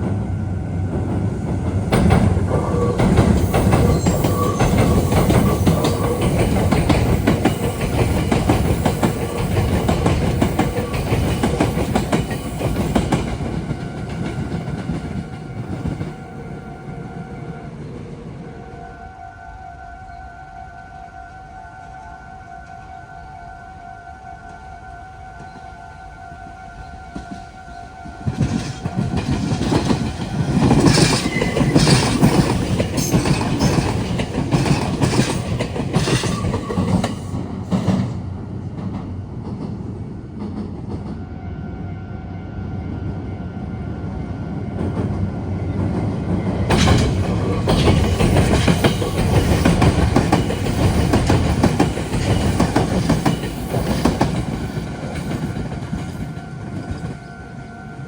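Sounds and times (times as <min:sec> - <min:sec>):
electric trains passing: 0:00.0 - 0:58.0
wheels clacking over rail joints: 0:00.9 - 0:16.2, 0:28.3 - 0:38.2, 0:45.8 - 0:57.2.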